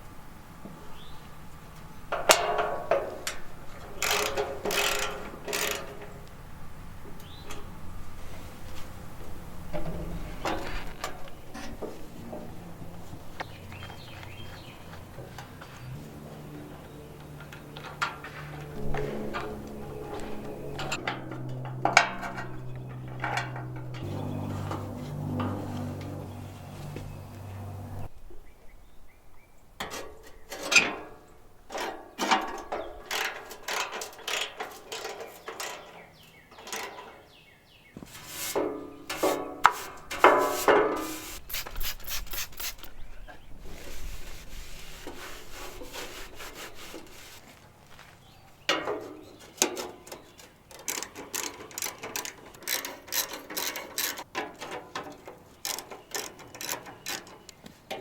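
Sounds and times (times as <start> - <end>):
metal clinks and scrapes: 2.2 - 6.3, 17.7 - 26.4, 50.7 - 57.5
ratchet clicking: 4.0 - 6.1, 50.9 - 54.2.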